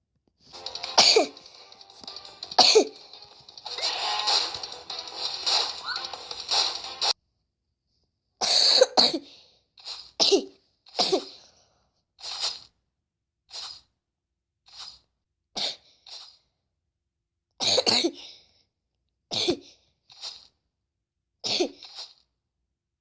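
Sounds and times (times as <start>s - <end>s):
girl coughing: 1.0s - 1.3s, 2.6s - 3.0s, 8.4s - 9.3s, 10.2s - 11.4s, 17.6s - 18.3s, 19.3s - 19.7s, 21.4s - 21.8s.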